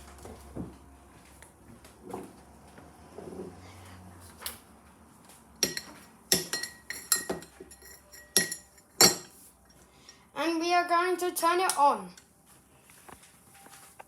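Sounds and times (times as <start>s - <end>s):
cups clinking and knocking: 5.6s - 9.4s.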